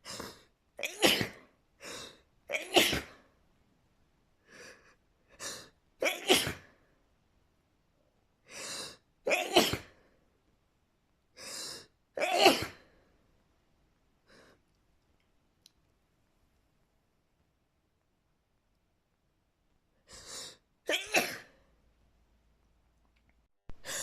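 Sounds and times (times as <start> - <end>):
person sneezing: 0.0 - 1.5, 2.5 - 3.3, 6.0 - 6.8, 9.3 - 10.0, 12.2 - 12.9, 20.9 - 21.6
person inhaling: 8.5 - 9.0, 20.1 - 20.6.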